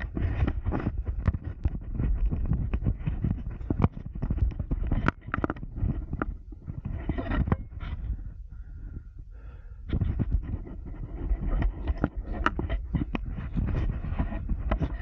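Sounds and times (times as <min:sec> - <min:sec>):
camera handling rumble: 0:00.0 - 0:09.1, 0:09.8 - 0:15.0.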